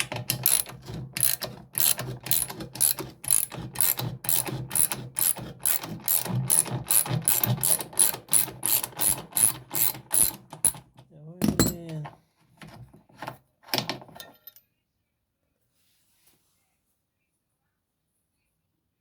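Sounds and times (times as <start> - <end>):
ratchet wrench clicking: 0.3 - 10.8.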